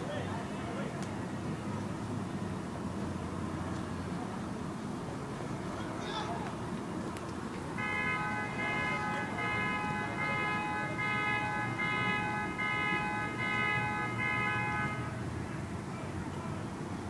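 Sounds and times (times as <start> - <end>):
low rumble of street noise: 0.0 - 17.0
car alarm horn honking: 7.8 - 15.2.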